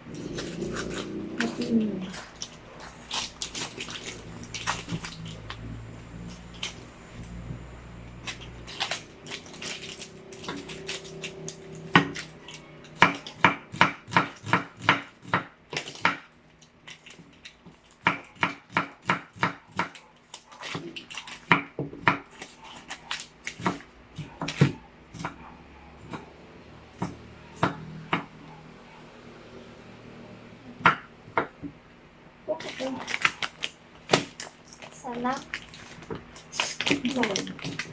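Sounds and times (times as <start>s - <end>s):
knife chopping on board: 11.9s - 12.3s, 13.0s - 16.2s, 18.0s - 20.0s, 20.6s - 22.4s, 23.4s - 25.4s, 27.0s - 28.3s.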